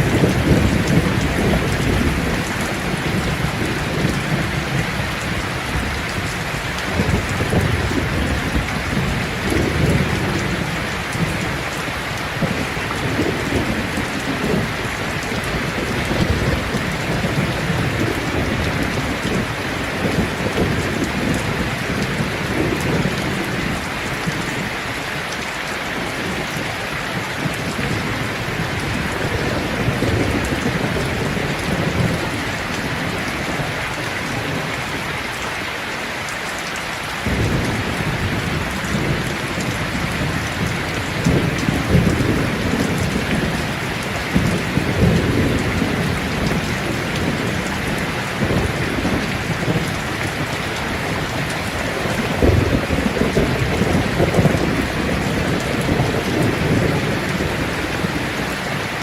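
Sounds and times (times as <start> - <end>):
thunder rumbling low: 0.0 - 11.7, 37.2 - 58.4
heavy rain hissing: 0.0 - 59.0.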